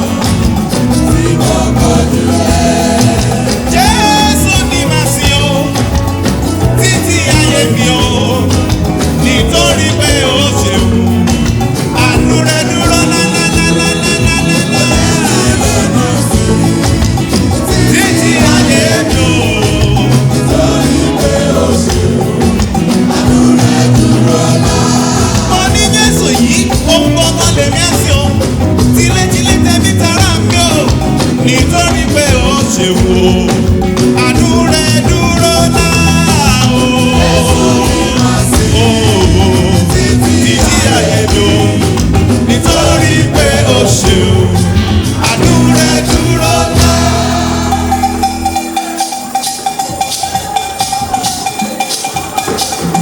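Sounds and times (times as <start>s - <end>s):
live band playing: 0.0s - 53.0s
voices singing: 0.0s - 53.0s.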